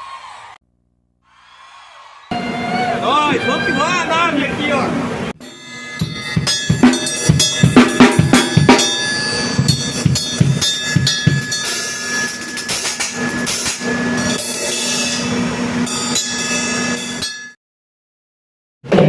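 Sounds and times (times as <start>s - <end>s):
cymbals washing: 2.3s - 17.6s
steady held tone: 2.3s - 17.6s
drum hits: 5.4s - 14.9s.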